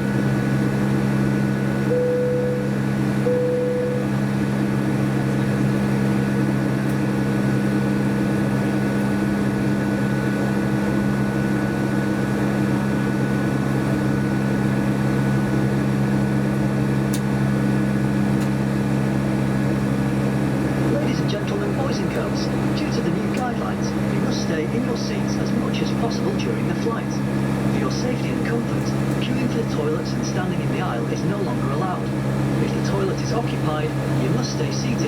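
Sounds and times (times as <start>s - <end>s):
airplane cabin engine hum: 0.0s - 35.0s
short electronic tone: 1.9s - 4.1s.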